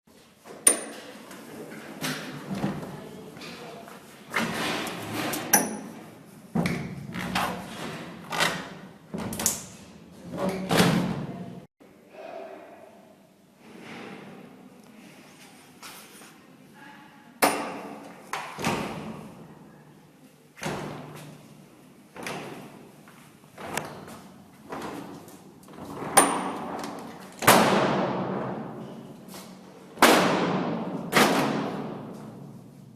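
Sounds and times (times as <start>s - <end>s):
heavy doors slamming with echo: 27.4s - 29.0s, 29.9s - 32.6s.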